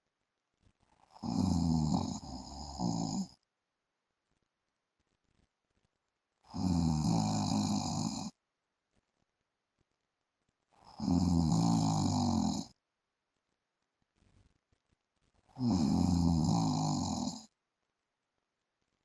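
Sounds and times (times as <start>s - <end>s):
man snoring: 1.1s - 3.3s, 6.5s - 8.3s, 10.9s - 12.7s, 15.6s - 17.5s.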